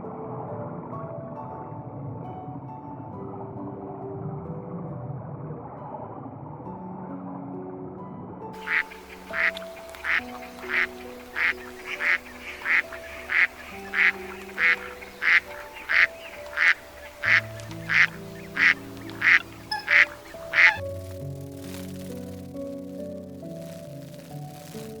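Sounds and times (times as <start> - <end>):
soft background music: 0.0 - 25.0
animal calling: 8.6 - 20.8.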